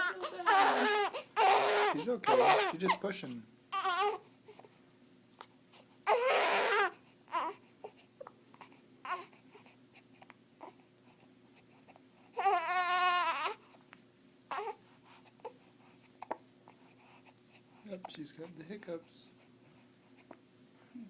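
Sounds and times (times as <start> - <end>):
baby yelping: 0.0 - 3.0, 3.7 - 4.3, 6.0 - 8.0, 9.0 - 9.4, 12.4 - 13.6, 14.5 - 14.8
baby crying: 0.0 - 3.1, 3.7 - 4.7, 6.0 - 8.1, 9.0 - 9.4, 12.3 - 13.6, 14.5 - 14.8.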